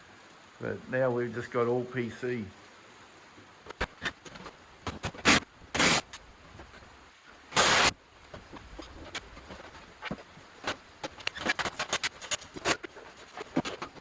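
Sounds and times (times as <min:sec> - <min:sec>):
loud scraping or rustling: 0:03.8 - 0:06.2, 0:07.6 - 0:14.0.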